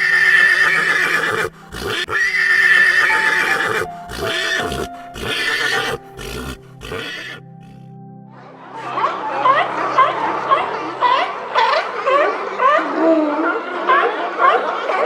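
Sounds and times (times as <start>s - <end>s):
horse whinnying: 0.0s - 7.9s.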